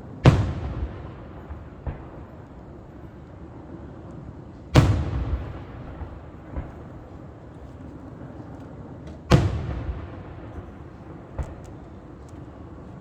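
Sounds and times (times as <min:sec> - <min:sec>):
fireworks shells booming: 0:00.0 - 0:03.2, 0:04.7 - 0:07.7, 0:09.0 - 0:12.8
faint fireworks thuds: 0:00.0 - 0:13.0.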